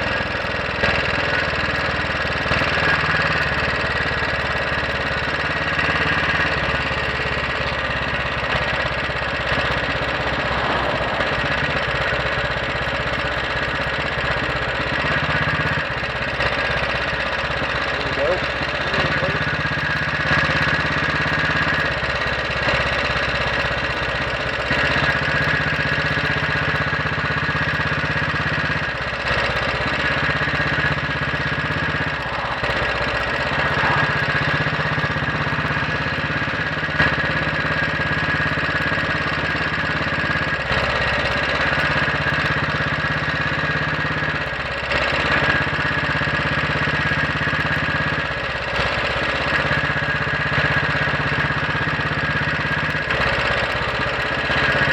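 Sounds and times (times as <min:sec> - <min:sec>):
motorcycle engine revving: 0:00.0 - 0:54.9.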